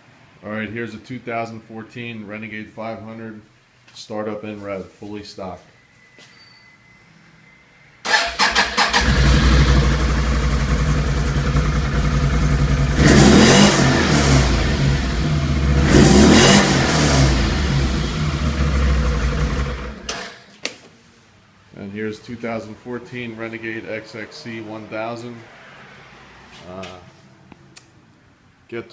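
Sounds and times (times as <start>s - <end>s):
atv engine idling and revving: 8.8s - 20.2s.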